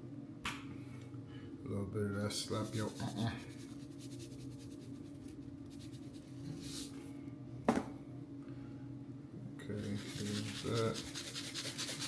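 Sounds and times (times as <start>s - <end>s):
spice shaker shaking: 9.8s - 12.0s.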